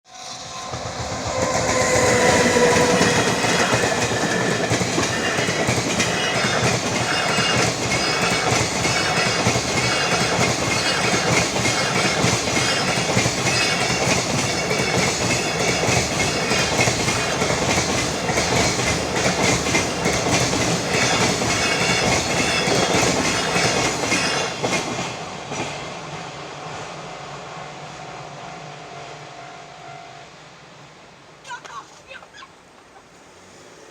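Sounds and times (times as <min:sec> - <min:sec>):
locomotive whine: 0:00.1 - 0:24.6
train wheels clickety-clack: 0:00.2 - 0:27.0.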